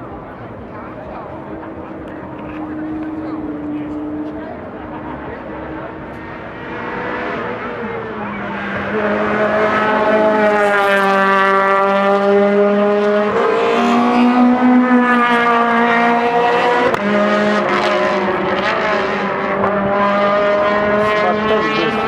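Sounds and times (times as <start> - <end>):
car engine revving high: 0.0 - 22.0.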